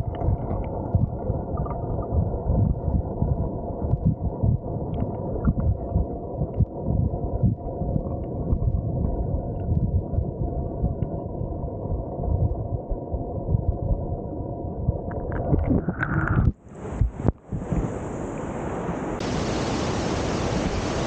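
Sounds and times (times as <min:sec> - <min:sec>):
waterfall rushing: 0:17.6 - 0:21.0.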